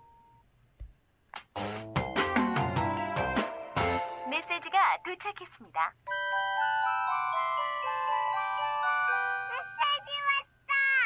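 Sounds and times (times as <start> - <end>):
recorded voice prompt: 4.3 - 6.0, 9.5 - 11.0.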